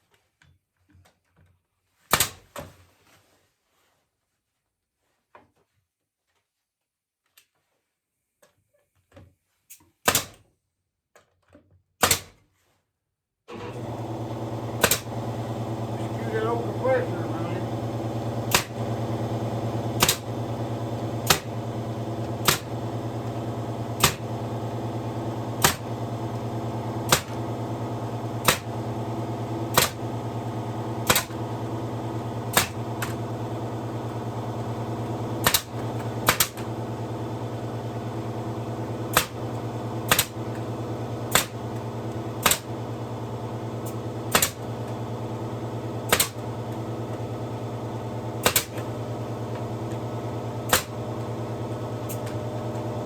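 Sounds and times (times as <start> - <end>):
pneumatic nailer firing: 2.1 - 2.4, 10.0 - 10.4, 12.0 - 12.4, 14.6 - 53.0
air compressor humming: 13.5 - 53.0.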